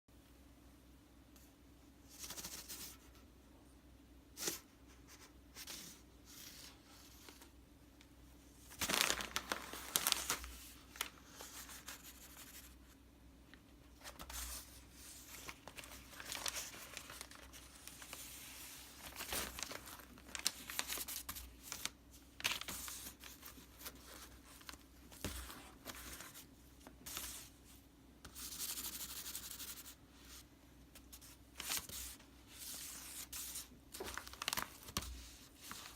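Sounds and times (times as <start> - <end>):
crinkly toy rustling: 8.6 - 12.0, 14.0 - 27.5, 31.2 - 35.9.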